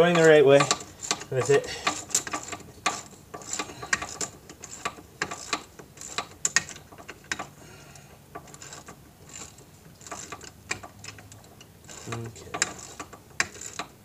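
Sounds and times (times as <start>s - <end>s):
socket ratchet clicking: 0.2s - 7.6s.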